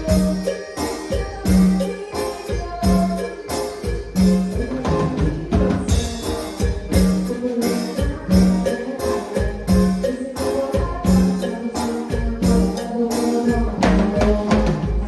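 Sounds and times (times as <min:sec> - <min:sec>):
instrumental cumbia music: 0:00.0 - 0:15.0.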